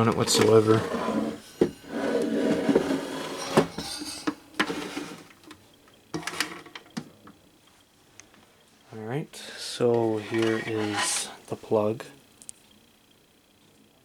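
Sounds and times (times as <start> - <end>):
plastic fan handling scrapes: 10.0 - 11.4.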